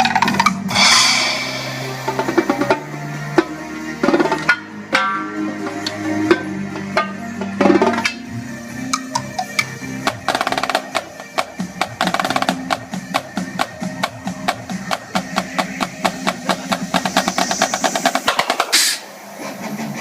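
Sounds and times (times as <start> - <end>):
backing music track: 0.0 - 20.0
drum roll ending in crash: 0.7 - 3.4.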